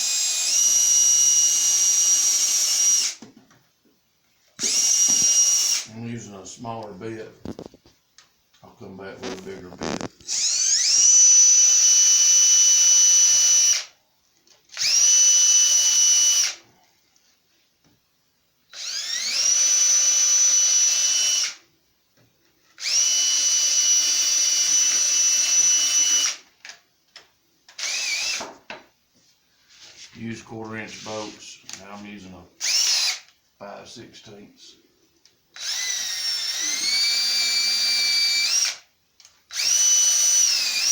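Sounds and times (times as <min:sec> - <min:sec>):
electric drill whining: 0:00.0 - 0:03.2, 0:04.6 - 0:05.9, 0:09.2 - 0:13.9, 0:14.7 - 0:16.6, 0:18.7 - 0:21.6, 0:22.8 - 0:26.4, 0:27.8 - 0:28.5, 0:32.6 - 0:33.3, 0:35.6 - 0:38.9, 0:39.5 - 0:40.9.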